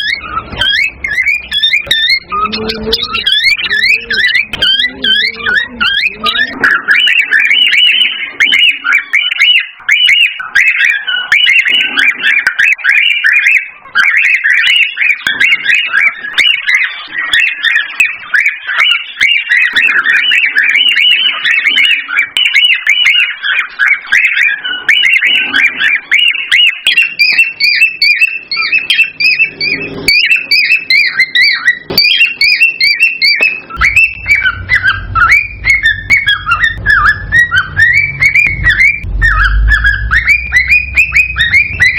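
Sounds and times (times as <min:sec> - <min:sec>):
cockatiel whistling and chirping: 0:00.0 - 0:41.9
higher chirps: 0:00.0 - 0:41.9
low hum: 0:33.8 - 0:41.9.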